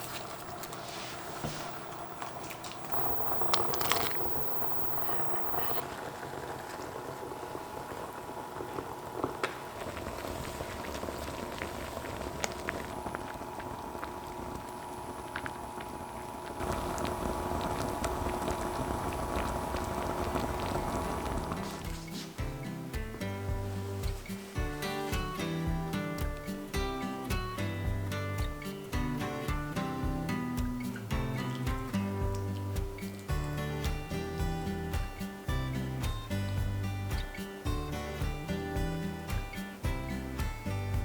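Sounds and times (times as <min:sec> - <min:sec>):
liquid bubbling at a boil: 0:00.0 - 0:26.5.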